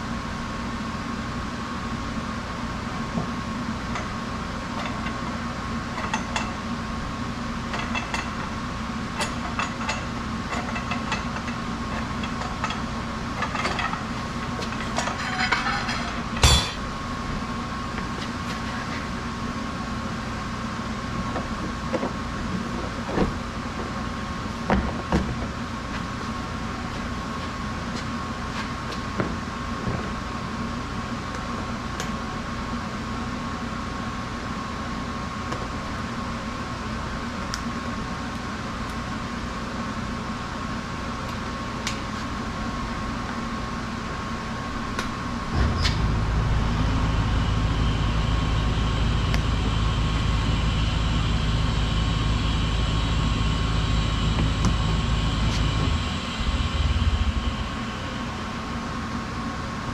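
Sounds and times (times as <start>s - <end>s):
machine hum: 14.4s - 17.3s, 45.2s - 59.9s
metal tools clinking on steel: 14.7s - 16.8s
loud sharp metal knock: 16.4s - 16.9s.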